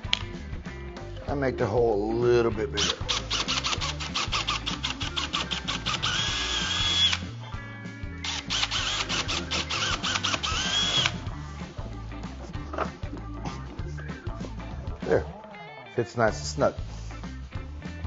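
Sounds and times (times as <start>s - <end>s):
background music: 0.0s - 18.0s
power drill motor whine: 2.8s - 7.3s, 8.2s - 11.2s.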